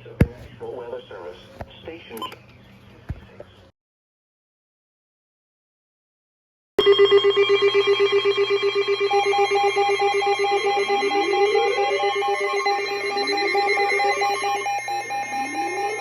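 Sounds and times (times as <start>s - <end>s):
higher pulsing tone: 6.8s - 16.0s
pulsing alarm tone: 6.8s - 16.0s
rising siren whoop: 8.4s - 16.0s.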